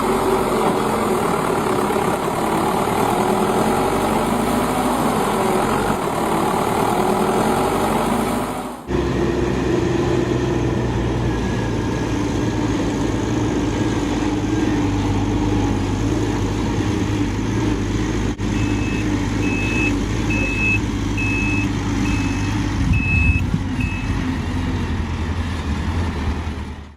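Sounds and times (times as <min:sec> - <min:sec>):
heavy diesel engine running: 0:00.0 - 0:26.9
reversing alarm beeping: 0:18.6 - 0:24.2.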